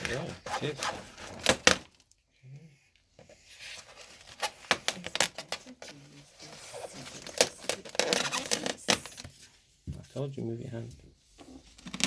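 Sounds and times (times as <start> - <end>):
crinkling plastic and cardboard: 0.0 - 2.2, 3.5 - 9.5.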